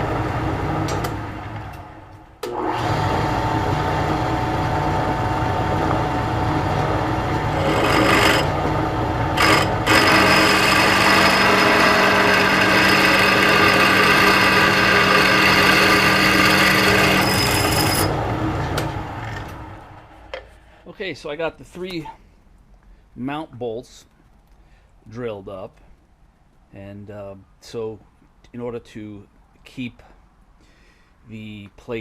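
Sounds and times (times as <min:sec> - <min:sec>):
drill press motor hum: 0:00.0 - 0:20.0
drill bit grinding into steel: 0:05.7 - 0:18.2.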